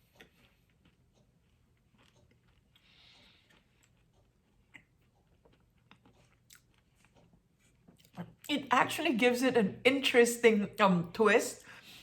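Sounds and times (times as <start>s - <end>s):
chewing: 0.0s - 8.6s.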